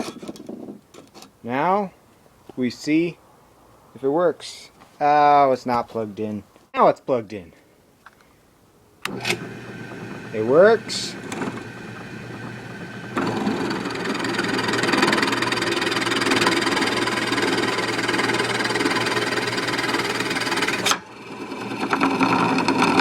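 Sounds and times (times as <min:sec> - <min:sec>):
drill press motor humming: 0:09.0 - 0:23.0
drill bit grinding into workpiece: 0:09.1 - 0:23.0.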